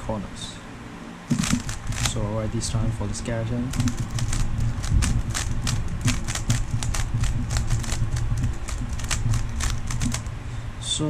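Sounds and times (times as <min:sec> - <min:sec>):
low steady hum: 0:00.0 - 0:11.0
puzzle cube plastic clicks: 0:01.3 - 0:02.2, 0:03.7 - 0:10.3.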